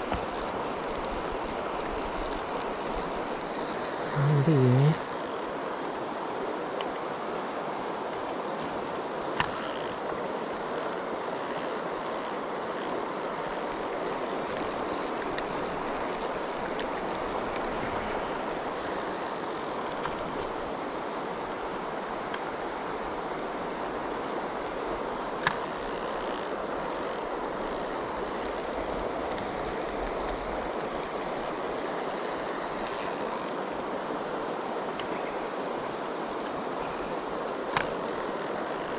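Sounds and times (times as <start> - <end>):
stream water rushing: 0.0 - 38.9.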